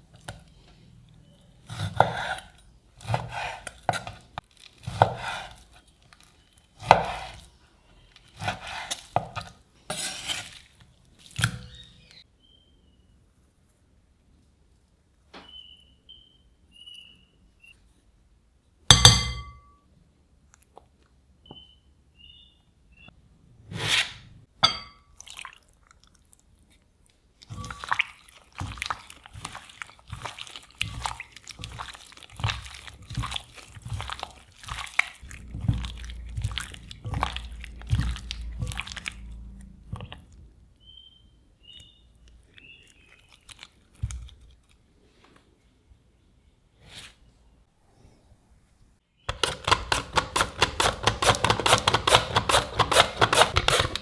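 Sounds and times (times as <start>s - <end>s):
bowl clinking and ringing: 18.9s - 19.8s, 24.6s - 25.1s
utensil tapping on food: 49.3s - 54.0s.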